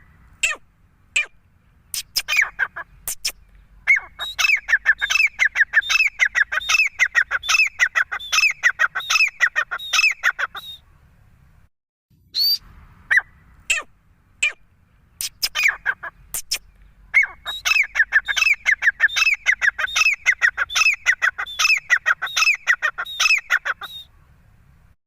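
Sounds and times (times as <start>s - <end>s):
francolin calling: 2.0s - 10.8s, 15.2s - 24.2s.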